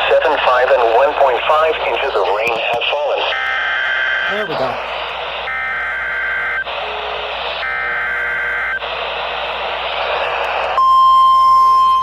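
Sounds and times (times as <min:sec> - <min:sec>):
radio hiss: 0:00.0 - 0:03.3, 0:04.2 - 0:05.5, 0:06.6 - 0:10.8
steady warning alarm tone: 0:03.2 - 0:12.0.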